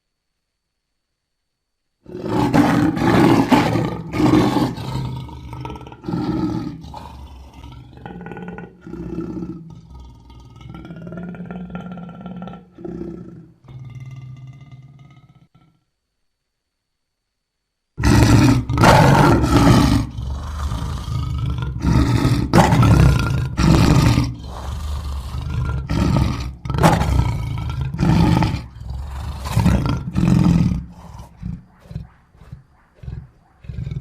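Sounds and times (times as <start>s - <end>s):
dinosaur roars and growls: 2.1s - 15.8s, 18.0s - 34.0s
quiet grunts: 28.6s - 34.0s.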